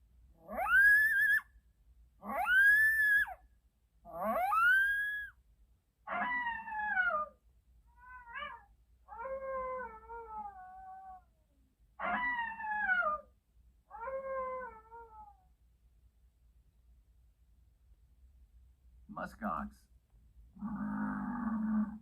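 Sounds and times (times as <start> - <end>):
animal wailing calls: 0.4 - 1.5, 2.2 - 3.4, 4.1 - 5.4, 20.6 - 22.0.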